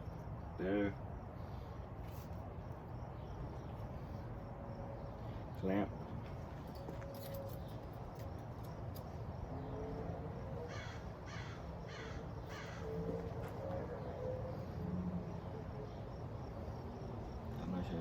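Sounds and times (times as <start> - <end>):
bird calling: 10.6 - 14.8.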